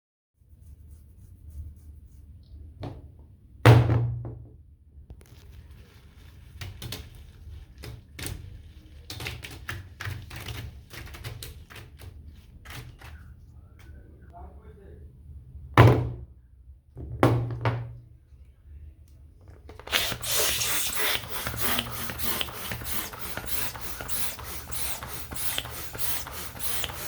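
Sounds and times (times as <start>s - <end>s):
rubber balloons being handled: 19.6s - 27.0s.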